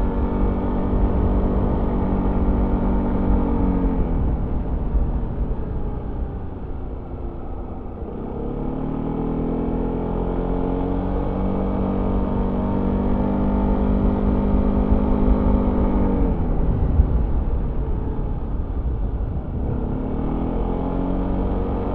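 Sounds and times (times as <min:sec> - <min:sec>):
steady low rumble: 0:00.0 - 0:08.8, 0:13.9 - 0:21.9.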